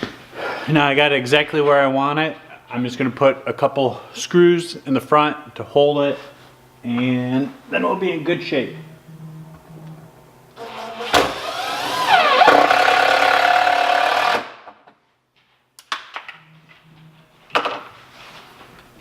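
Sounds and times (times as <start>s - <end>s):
power drill driving screw into wood: 10.6s - 14.8s.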